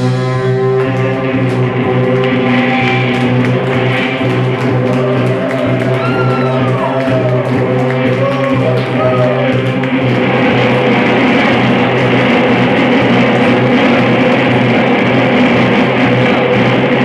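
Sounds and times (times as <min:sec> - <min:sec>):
fast ticking beat: 0:00.0 - 0:17.0
loud droning tones: 0:00.0 - 0:17.0.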